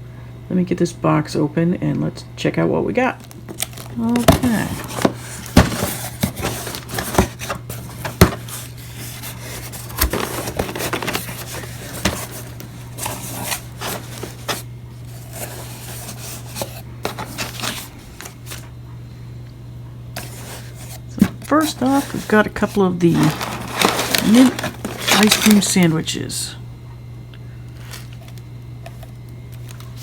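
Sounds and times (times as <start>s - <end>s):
steady low hum: 0.0s - 30.0s
cardboard box being opened: 3.2s - 18.6s, 20.2s - 25.9s.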